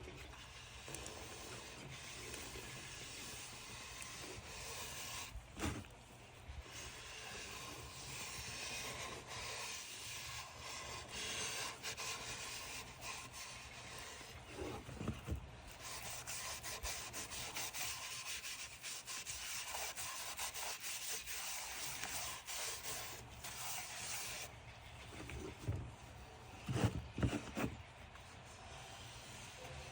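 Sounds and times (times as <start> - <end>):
sandpaper rubbing on wood: 0.4 - 5.4, 6.6 - 14.9, 15.7 - 24.5.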